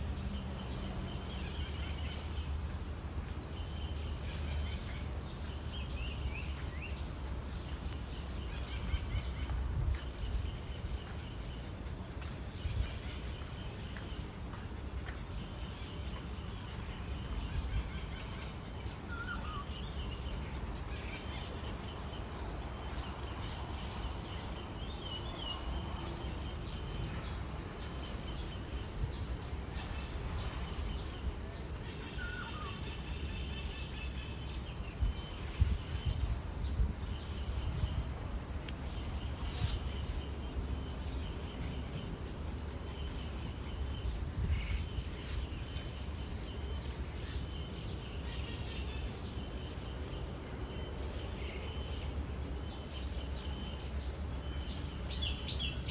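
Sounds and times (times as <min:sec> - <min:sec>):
cicadas droning: 0:00.0 - 0:55.9
bird chirps: 0:19.1 - 0:20.3, 0:32.0 - 0:34.0.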